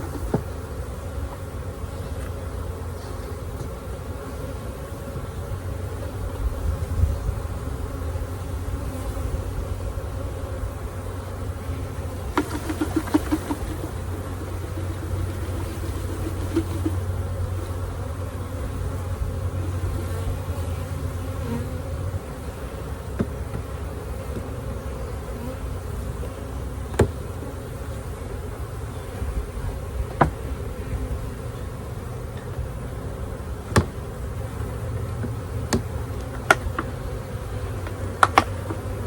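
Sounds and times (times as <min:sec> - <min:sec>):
wooden hive parts knocking: 0:00.0 - 0:00.6, 0:12.3 - 0:14.8, 0:23.1 - 0:23.7, 0:26.9 - 0:27.2, 0:30.0 - 0:30.5, 0:33.7 - 0:37.0, 0:37.8 - 0:38.9
honeybees buzzing: 0:00.0 - 0:39.0.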